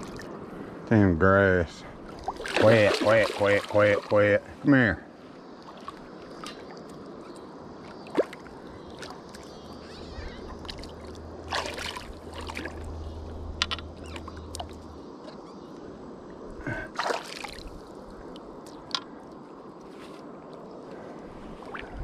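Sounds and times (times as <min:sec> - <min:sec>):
water splashing and sloshing: 0:00.0 - 0:00.8, 0:01.8 - 0:04.6, 0:05.2 - 0:22.0
low hum: 0:09.4 - 0:16.9.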